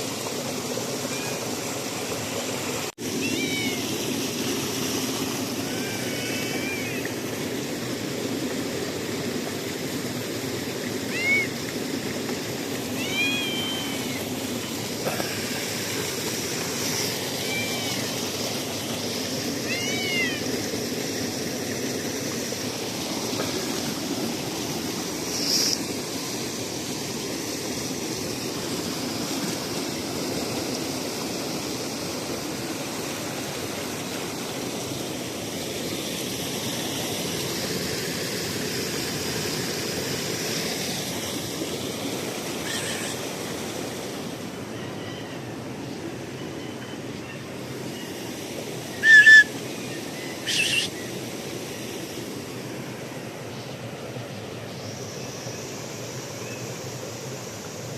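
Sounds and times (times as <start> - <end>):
cat meowing: 3.2 - 3.9, 11.1 - 11.5, 13.0 - 14.2, 17.4 - 18.1, 19.6 - 20.5, 50.5 - 50.9.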